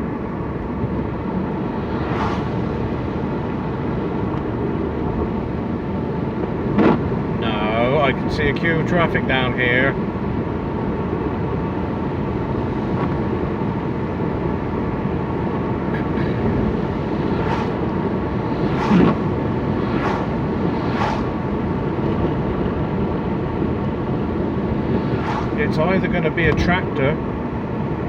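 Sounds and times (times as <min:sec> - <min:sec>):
road and engine noise in car: 0:00.0 - 0:28.0
short swishes or knocks: 0:01.9 - 0:02.6, 0:12.8 - 0:13.2, 0:16.8 - 0:21.6, 0:24.9 - 0:25.6.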